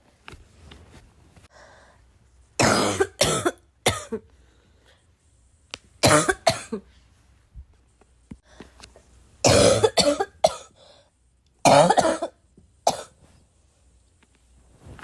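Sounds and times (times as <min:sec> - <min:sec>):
intake of breath: 0:01.5 - 0:02.0
person coughing: 0:02.6 - 0:04.2, 0:06.0 - 0:06.9, 0:09.4 - 0:10.7, 0:11.6 - 0:13.2.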